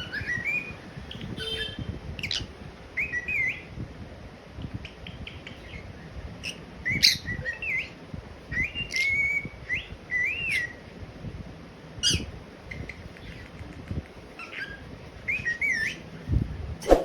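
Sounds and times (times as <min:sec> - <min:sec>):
parrot whistling and chirping: 0:00.0 - 0:03.7, 0:04.8 - 0:10.8, 0:12.0 - 0:13.5, 0:14.4 - 0:16.1.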